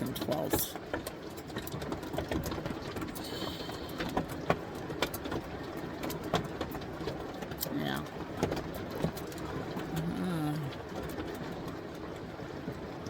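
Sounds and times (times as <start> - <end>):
hail pelting a roof: 0.0 - 13.0
rain hiss: 3.1 - 4.5.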